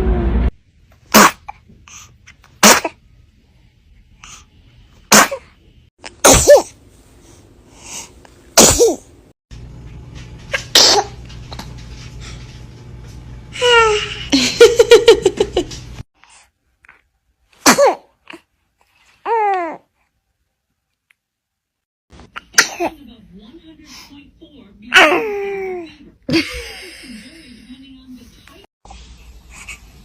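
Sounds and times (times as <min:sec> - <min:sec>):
baby sneezing: 0:01.1 - 0:01.6, 0:02.6 - 0:03.0, 0:05.1 - 0:05.5, 0:06.1 - 0:06.8, 0:08.6 - 0:09.0, 0:10.5 - 0:11.2, 0:17.6 - 0:18.4, 0:22.4 - 0:23.0.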